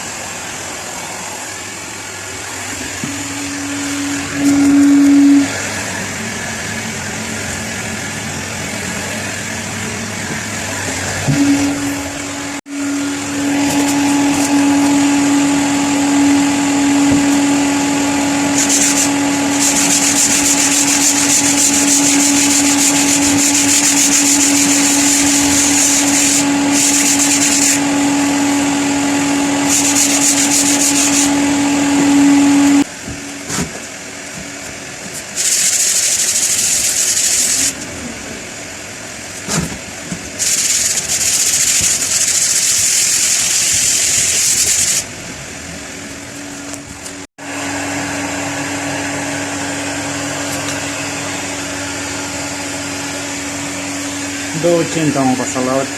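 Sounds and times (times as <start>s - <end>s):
hot-air blower motor hum: 0.0s - 55.9s
high hissing: 18.6s - 27.8s, 40.4s - 45.0s.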